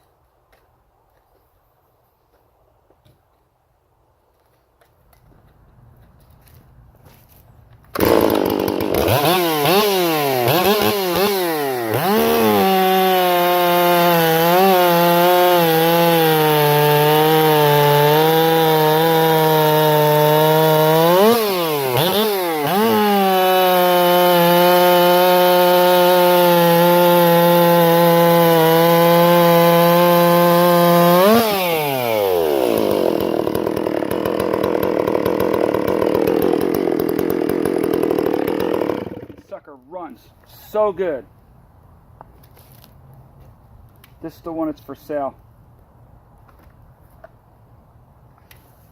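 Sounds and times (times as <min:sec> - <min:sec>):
chainsaw revving: 0:07.9 - 0:39.6.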